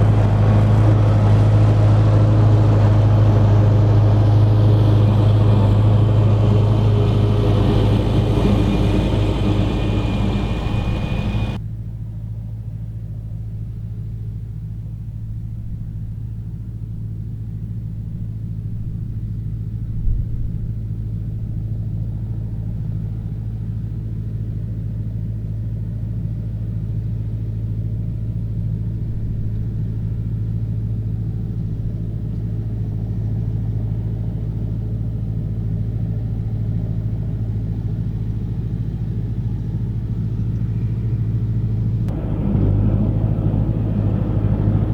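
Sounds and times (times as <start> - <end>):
tractor engine running under load: 0.0 - 11.6, 21.1 - 44.9.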